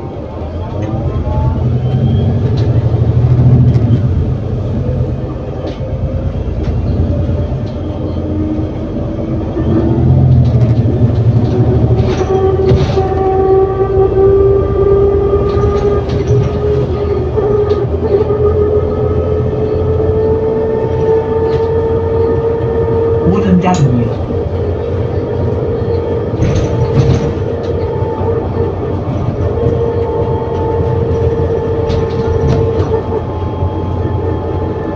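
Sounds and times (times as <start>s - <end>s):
bus engine rumble: 0.0s - 34.9s
interior rattles and clicks: 9.7s - 18.4s, 23.4s - 34.0s.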